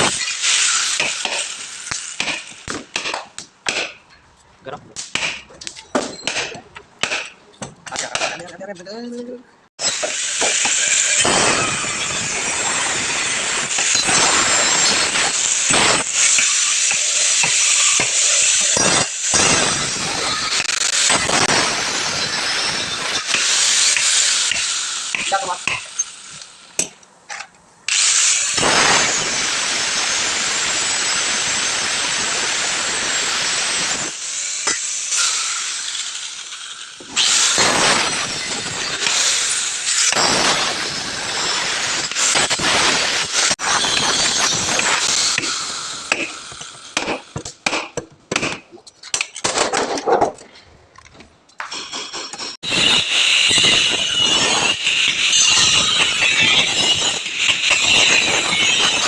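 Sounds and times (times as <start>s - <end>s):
workshop tool hissing: 0.0s - 2.8s, 9.8s - 26.8s, 27.9s - 47.4s, 51.7s - 59.0s.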